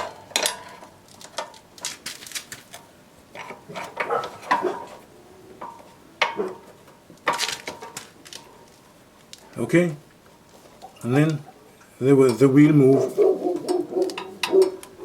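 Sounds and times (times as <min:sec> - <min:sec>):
metal tools clanking on metal: 0:00.0 - 0:01.6, 0:03.3 - 0:05.0, 0:12.2 - 0:15.0.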